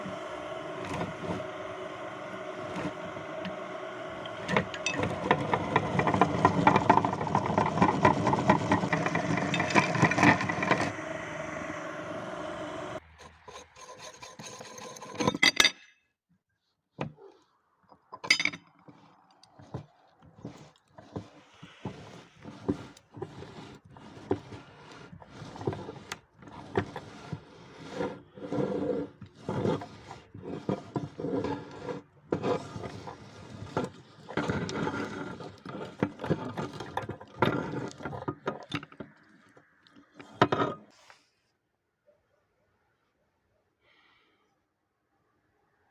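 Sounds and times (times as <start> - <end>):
meat grinder crunching chocolate: 0.0 - 13.0, 19.0 - 39.7.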